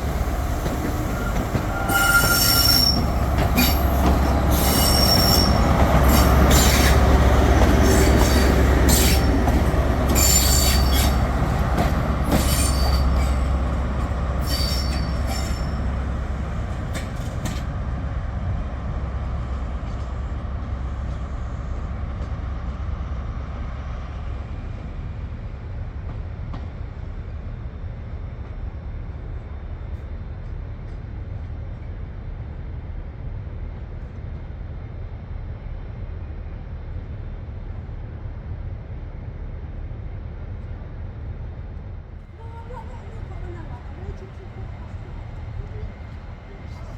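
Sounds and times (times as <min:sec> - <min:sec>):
train low rumble: 0:00.0 - 0:46.9
train wheels squealing: 0:00.1 - 0:07.2, 0:07.8 - 0:13.6, 0:14.4 - 0:16.1.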